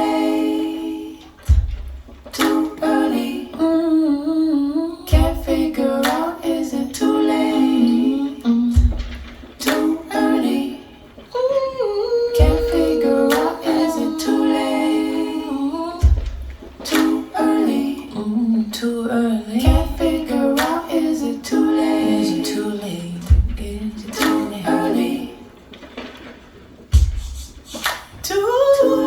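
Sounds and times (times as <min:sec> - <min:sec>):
deep low beat: 0:01.5 - 0:02.3, 0:05.1 - 0:05.7, 0:08.8 - 0:09.5, 0:12.4 - 0:13.5, 0:16.0 - 0:16.8, 0:19.7 - 0:20.3, 0:23.3 - 0:23.9
woman singing over loudspeakers: 0:02.4 - 0:25.6, 0:27.0 - 0:29.0.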